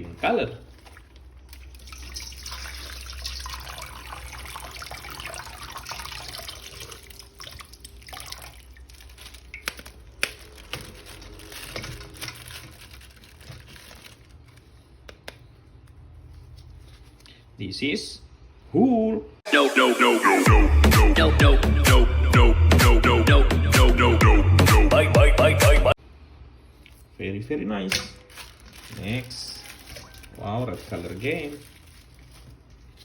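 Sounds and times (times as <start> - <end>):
water running and splashing: 0.7 - 9.9.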